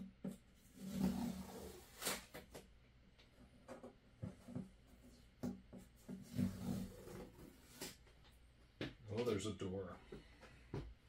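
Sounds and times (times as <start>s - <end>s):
packing tape ripping: 0.9s - 2.4s
tape tearing snap: 1.9s - 2.6s.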